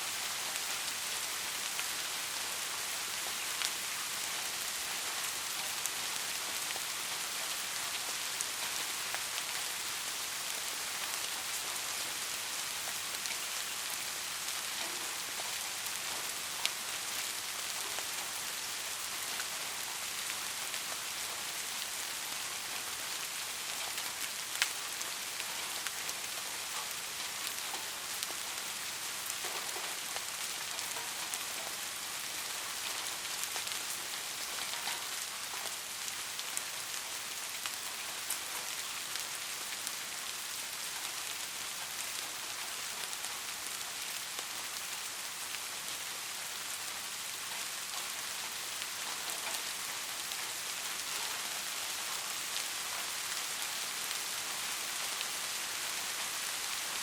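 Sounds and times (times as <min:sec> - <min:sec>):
soft rain falling: 0:00.0 - 0:57.0.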